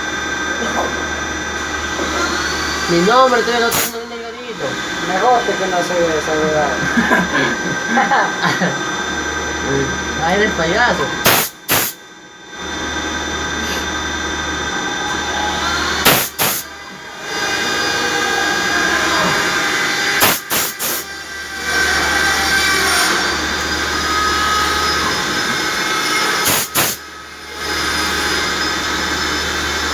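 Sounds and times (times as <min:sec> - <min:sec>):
machine spindle engraving metal: 0:00.0 - 0:08.1, 0:08.8 - 0:29.9
high whining tones: 0:00.0 - 0:29.9
sharp machine clicks: 0:11.2 - 0:12.0, 0:16.0 - 0:16.7, 0:20.2 - 0:21.1, 0:26.4 - 0:27.0.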